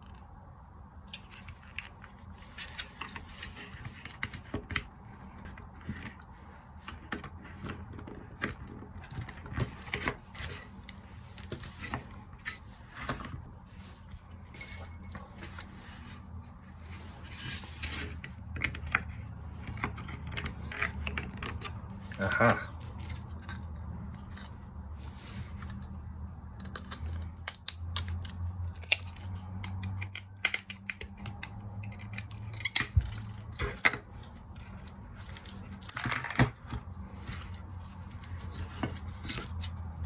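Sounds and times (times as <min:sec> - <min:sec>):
plastic parts clicking and scraping: 0:01.0 - 0:40.0.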